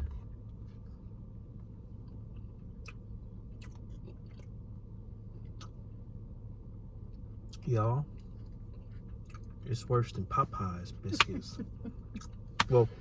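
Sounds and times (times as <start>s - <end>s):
low room hum: 0.0s - 13.0s.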